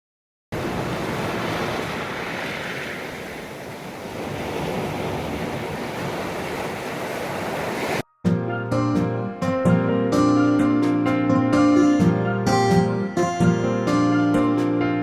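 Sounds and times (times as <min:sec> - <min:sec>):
sea waves washing onto beach: 0:00.6 - 0:08.0.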